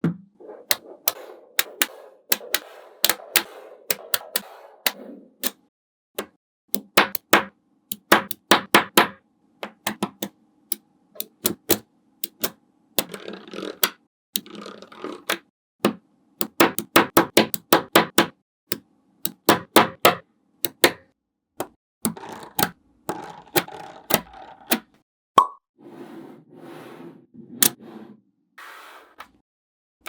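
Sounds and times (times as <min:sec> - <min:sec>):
magnetic balls clicking: 0:00.7 - 0:05.6, 0:09.9 - 0:15.4, 0:22.1 - 0:25.5.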